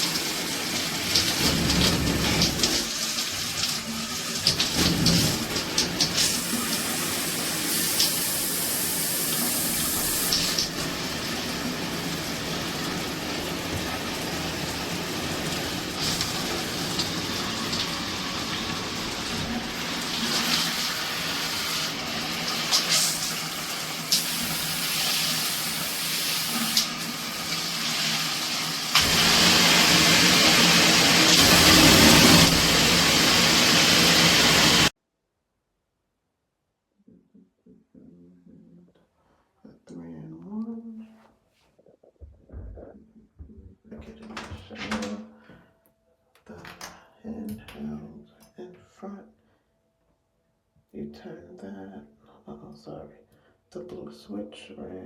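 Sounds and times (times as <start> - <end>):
shower head spraying water: 0.0 - 34.9.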